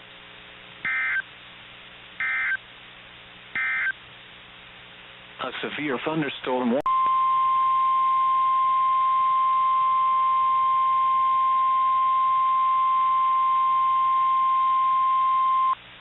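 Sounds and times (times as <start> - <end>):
steady warning alarm tone: 0.9 - 1.2, 2.2 - 2.6, 3.6 - 4.0.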